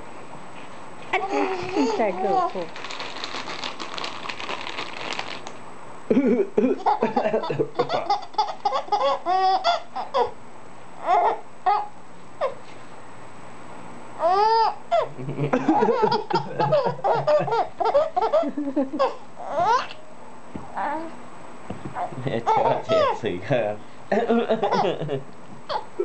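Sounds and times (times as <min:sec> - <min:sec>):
baby laughing: 0:01.2 - 0:02.5, 0:06.8 - 0:10.4, 0:11.0 - 0:11.9, 0:14.2 - 0:20.0, 0:22.0 - 0:23.2, 0:24.3 - 0:25.9
baby squealing: 0:07.8 - 0:10.4, 0:11.0 - 0:12.5, 0:14.2 - 0:15.1, 0:19.0 - 0:20.0, 0:22.0 - 0:23.2.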